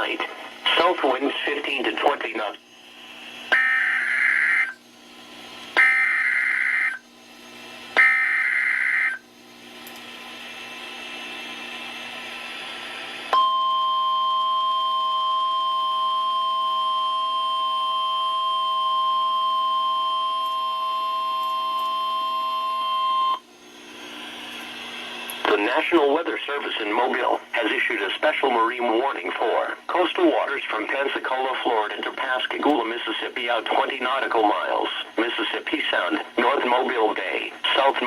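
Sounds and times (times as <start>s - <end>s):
radio hiss: 0.0s - 4.7s, 24.0s - 38.0s
steady warning alarm tone: 3.2s - 7.0s, 8.0s - 9.2s, 13.3s - 24.3s.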